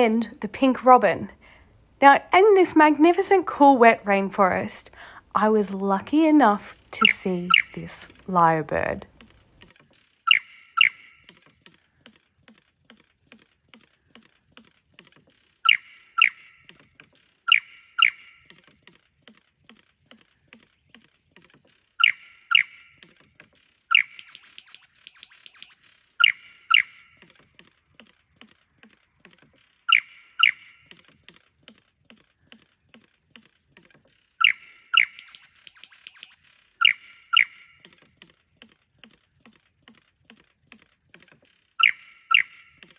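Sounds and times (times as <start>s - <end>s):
rapid high bird chattering: 7.0s - 8.0s, 17.5s - 18.5s, 23.9s - 27.2s, 29.9s - 31.0s, 34.4s - 37.8s, 41.8s - 42.9s
lyrebird singing sharp notes: 7.0s - 8.2s, 23.9s - 27.2s, 29.9s - 30.9s, 34.4s - 37.8s.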